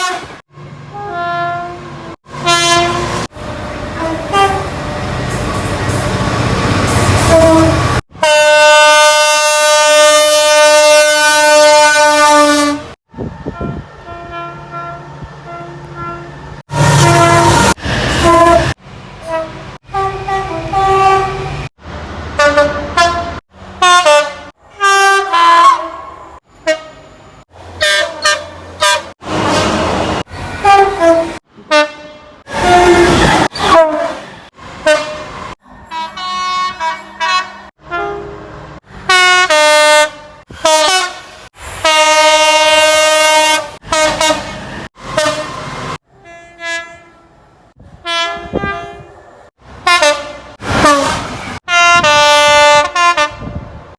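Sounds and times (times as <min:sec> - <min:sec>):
train horn blasts: 0:00.0 - 0:04.8, 0:06.9 - 0:21.7, 0:22.4 - 0:29.8, 0:30.6 - 0:49.2, 0:49.8 - 0:53.7.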